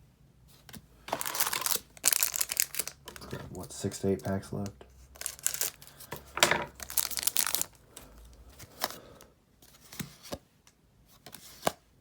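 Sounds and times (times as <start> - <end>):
wrapper crinkling: 1.1 - 3.7, 5.2 - 9.0.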